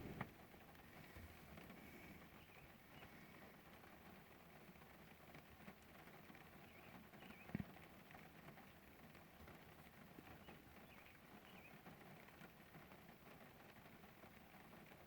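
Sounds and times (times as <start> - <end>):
rain patter: 0.0 - 15.0
birds chirping: 1.0 - 3.5, 6.4 - 7.7, 10.2 - 11.9.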